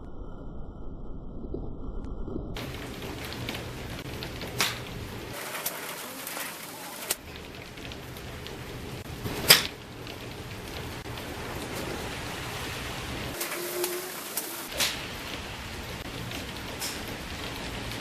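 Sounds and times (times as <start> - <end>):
outdoor background noise: 0.0 - 18.0
golf club striking ball: 4.6 - 5.0, 9.4 - 9.8, 14.7 - 15.1.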